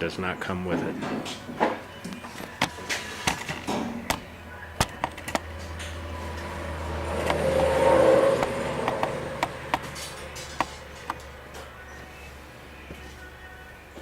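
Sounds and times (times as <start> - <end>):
sharp clicks and knocks: 4.8 - 6.0, 7.2 - 7.7, 8.8 - 11.3.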